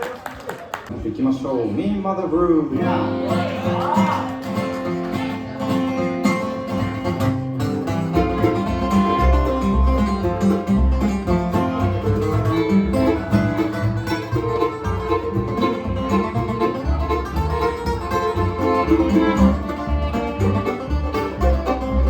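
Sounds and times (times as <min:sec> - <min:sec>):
guitar picking: 0:02.7 - 0:22.0
banjo picking: 0:02.8 - 0:22.0
bass notes: 0:05.7 - 0:22.0.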